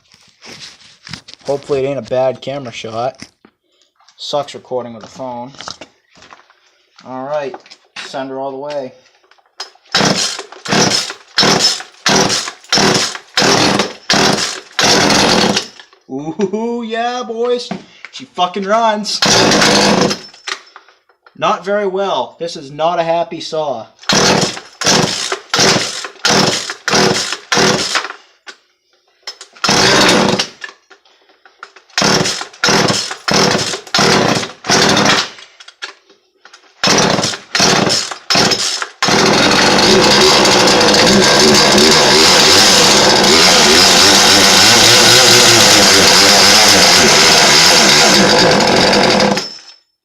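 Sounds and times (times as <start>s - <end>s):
chainsaw running poorly: 10.0s - 15.8s, 19.2s - 20.2s, 24.1s - 28.2s, 29.6s - 30.6s, 32.0s - 35.4s, 36.8s - 49.7s.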